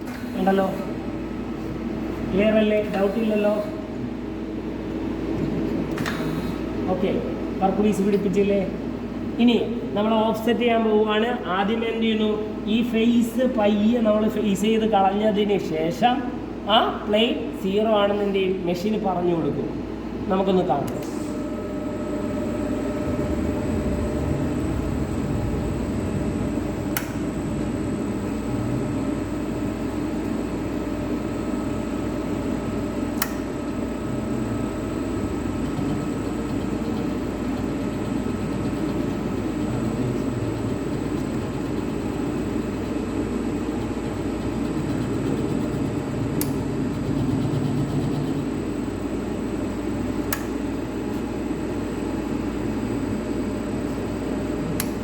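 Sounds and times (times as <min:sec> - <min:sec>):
lathe running: 0:21.3 - 0:30.7, 0:31.9 - 0:50.0.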